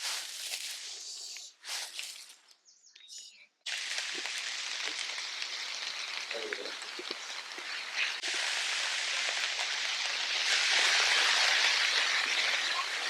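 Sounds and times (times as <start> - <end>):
rain on foliage: 3.7 - 13.0.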